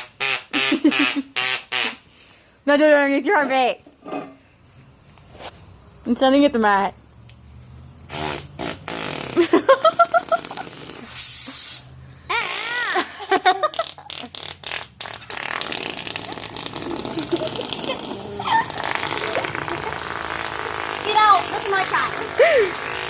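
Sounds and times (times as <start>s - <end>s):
air hiss: 8.1s - 9.4s, 10.3s - 12.1s
armpit fart noises: 8.1s - 11.1s, 13.7s - 23.0s
children laughing: 9.4s - 10.9s, 12.3s - 14.4s, 16.9s - 23.0s.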